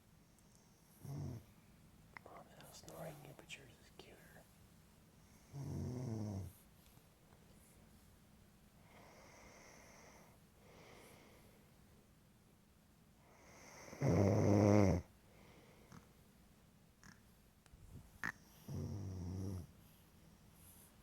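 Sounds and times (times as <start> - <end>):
person snoring: 13.8 - 15.1, 18.7 - 19.7.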